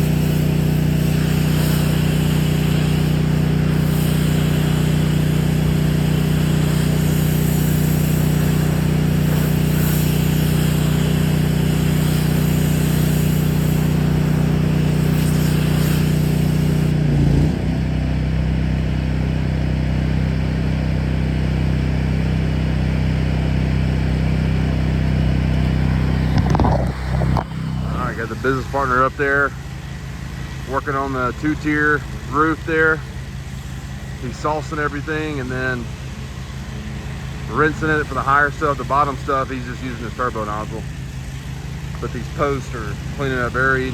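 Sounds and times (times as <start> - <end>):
water spray hiss: 0.0 - 17.6
pressure washer engine running: 0.0 - 43.9.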